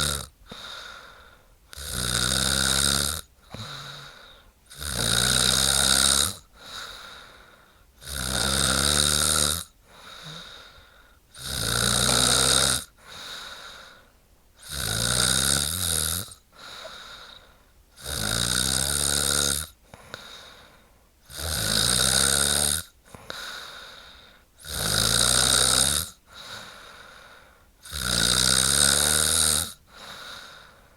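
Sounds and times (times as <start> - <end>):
woman snoring: 0.0 - 7.0, 8.0 - 14.0, 14.6 - 17.4, 18.0 - 20.4, 21.3 - 23.8, 24.6 - 27.1, 27.8 - 30.7
soft breath: 0.4 - 1.6, 3.4 - 4.6, 6.5 - 8.0, 9.8 - 11.3, 13.0 - 14.2, 16.5 - 17.8, 19.8 - 21.1, 23.0 - 24.5, 26.3 - 27.8, 29.9 - 30.9.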